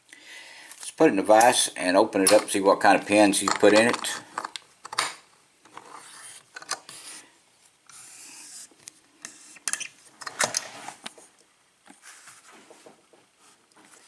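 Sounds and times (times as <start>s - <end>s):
small metal clicks and knocks: 3.4s - 5.1s.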